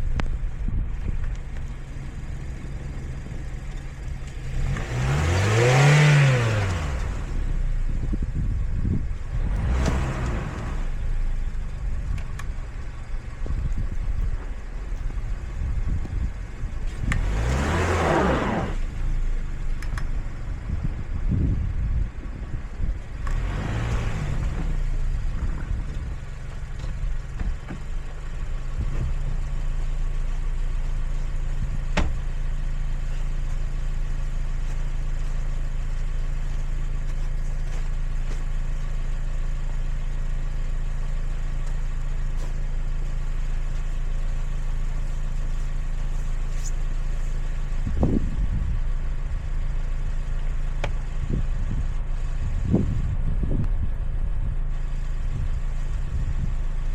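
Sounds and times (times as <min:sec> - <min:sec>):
car engine humming: 0:00.0 - 0:56.9.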